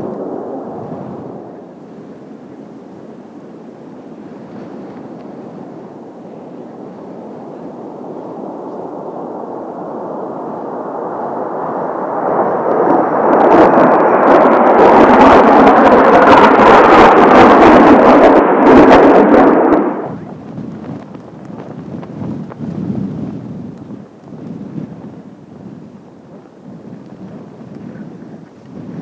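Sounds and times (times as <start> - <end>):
jets passing overhead: 0.0 - 29.0.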